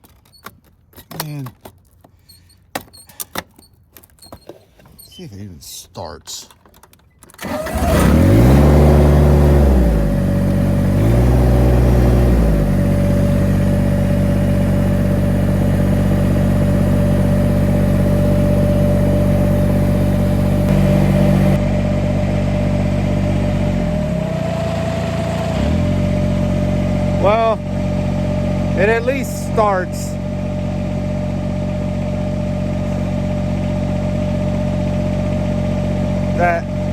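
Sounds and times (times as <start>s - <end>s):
tractor engine revving and idling: 7.4s - 36.9s
steady whine: 13.0s - 23.8s.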